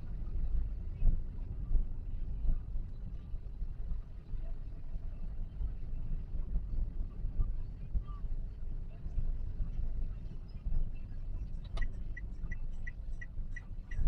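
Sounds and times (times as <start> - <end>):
road and engine rumble: 0.0 - 14.0
turn signal ticking: 11.5 - 14.0.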